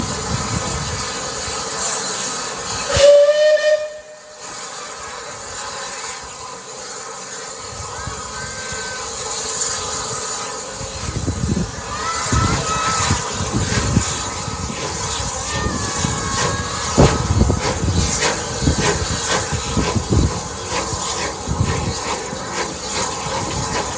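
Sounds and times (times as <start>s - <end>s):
steam hissing: 0.0s - 23.9s
steam locomotive whistle: 2.8s - 4.6s.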